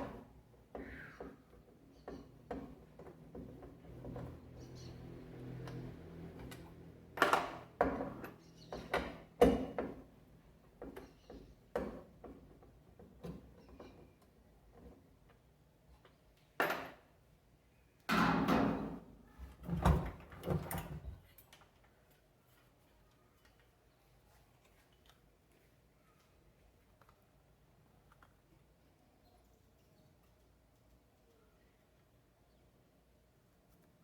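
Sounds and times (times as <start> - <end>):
tools and metal parts clunking: 5.7 - 10.0.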